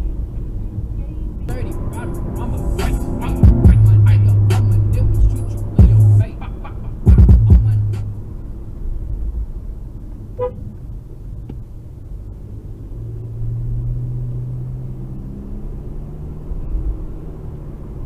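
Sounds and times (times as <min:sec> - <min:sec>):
car road and engine rumble: 0:00.0 - 0:18.0
low engine hum: 0:00.0 - 0:18.0
car horn toot: 0:10.4 - 0:10.7.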